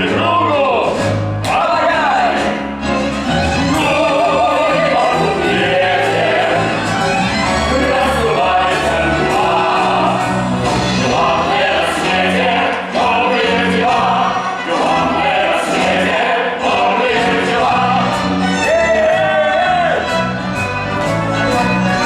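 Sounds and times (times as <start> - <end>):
symphony orchestra: 0.0 - 22.0
cast singing together: 3.7 - 19.7.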